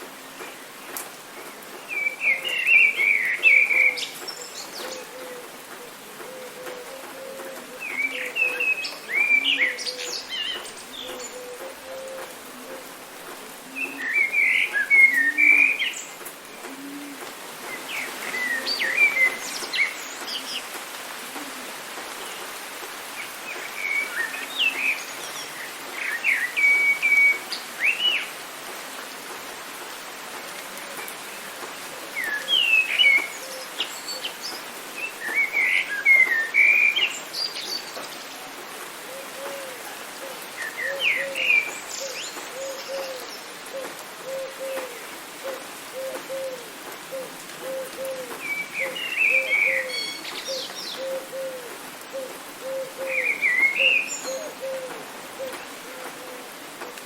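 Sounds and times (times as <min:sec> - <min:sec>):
rain hissing: 0:00.0 - 0:57.0
songbird chirping and whistling: 0:47.7 - 0:51.5, 0:52.7 - 0:54.9.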